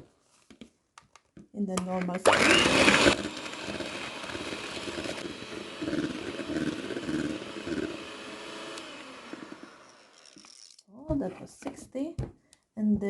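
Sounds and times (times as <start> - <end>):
electric mixer whipping: 2.2 - 10.8.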